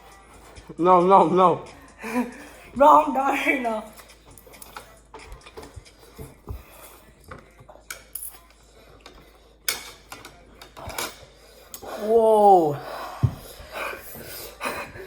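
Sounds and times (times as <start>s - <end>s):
utensils tapping a bowl: 7.3s - 11.2s.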